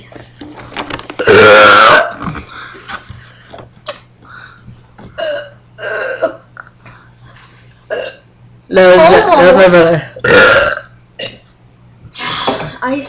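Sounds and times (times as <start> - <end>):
child burping: 1.2 - 2.4, 5.2 - 6.7, 7.9 - 8.3, 10.2 - 11.4.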